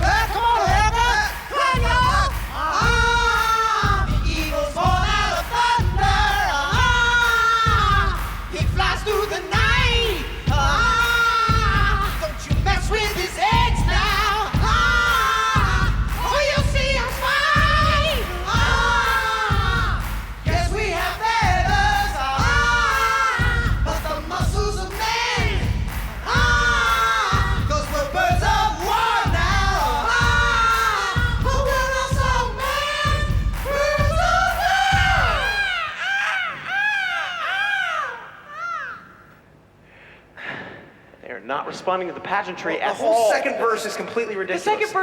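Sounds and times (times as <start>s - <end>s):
heavy beat: 0.0s - 35.8s.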